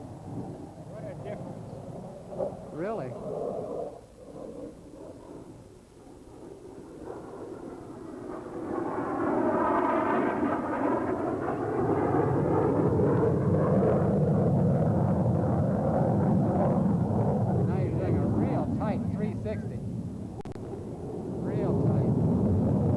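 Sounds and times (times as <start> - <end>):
jet engine roar: 0.0 - 22.9.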